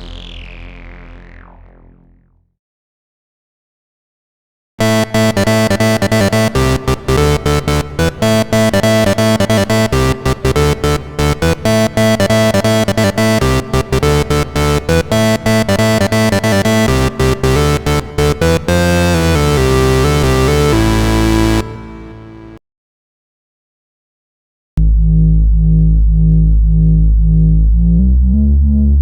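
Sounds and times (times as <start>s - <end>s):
synthesizer playing chopped notes: 0.0s - 2.3s, 4.8s - 22.6s.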